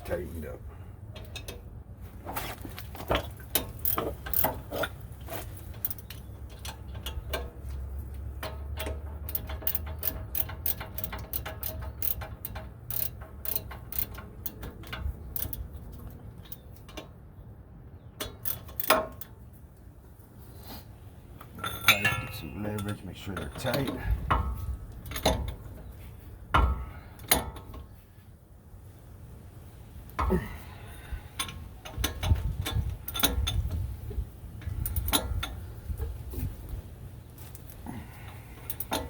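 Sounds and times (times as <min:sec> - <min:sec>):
hand ratchet clicking: 0:03.6 - 0:05.0, 0:08.3 - 0:15.8, 0:18.2 - 0:19.3, 0:38.6 - 0:39.0.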